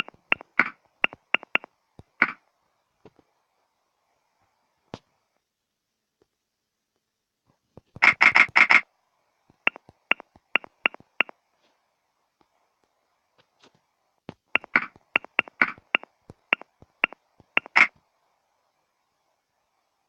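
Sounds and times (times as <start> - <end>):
phone keyboard taps: 0.0 - 2.4, 9.7 - 11.3, 14.6 - 17.9.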